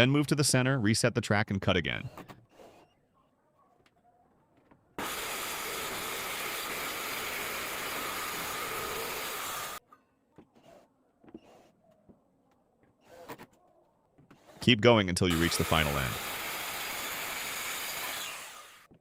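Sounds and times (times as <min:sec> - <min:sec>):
power saw cutting plywood: 0:05.0 - 0:09.8, 0:14.3 - 0:19.0.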